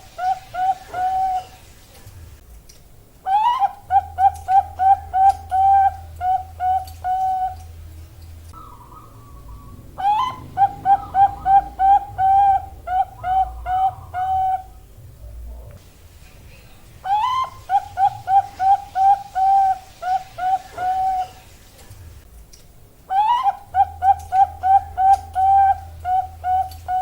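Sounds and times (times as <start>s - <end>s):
dove cooing: 0.0s - 1.7s, 3.3s - 7.9s, 8.5s - 14.9s, 17.0s - 21.5s, 23.1s - 27.0s.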